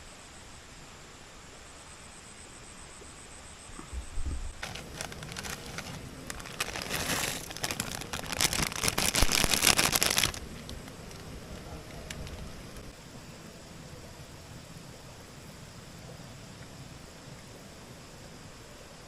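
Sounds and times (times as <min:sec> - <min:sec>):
material crinkling: 0:04.6 - 0:12.9.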